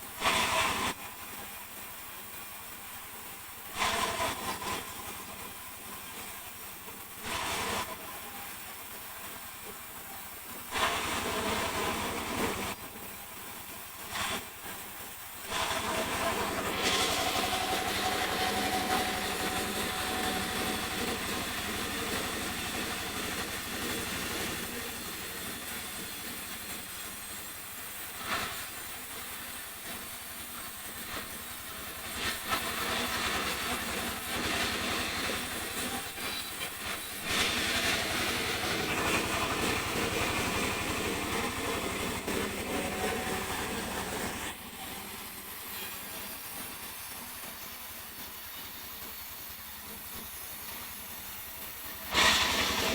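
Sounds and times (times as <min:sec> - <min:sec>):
sawmill saw cutting wood: 0:03.8 - 0:05.2, 0:10.7 - 0:12.8, 0:15.5 - 0:49.3, 0:49.9 - 0:52.9.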